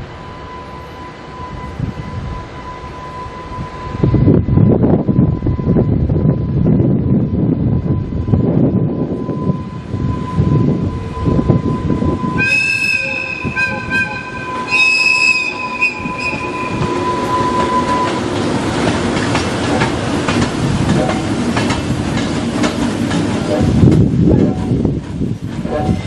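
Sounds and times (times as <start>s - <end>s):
locomotives rumbling on rails: 0.0s - 26.0s
shrill high tone: 9.4s - 18.3s
wheels clattering over rail joints: 15.5s - 26.0s.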